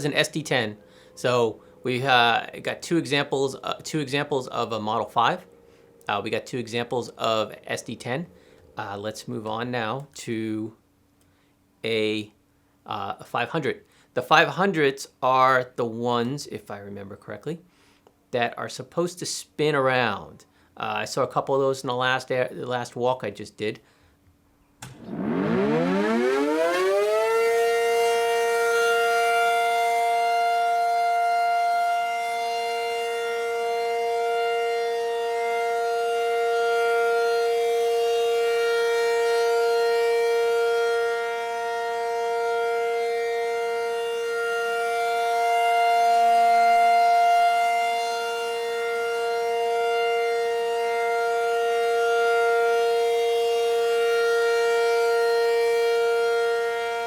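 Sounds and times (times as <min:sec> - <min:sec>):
air raid siren: 0:00.0 - 0:09.1, 0:24.8 - 0:57.0.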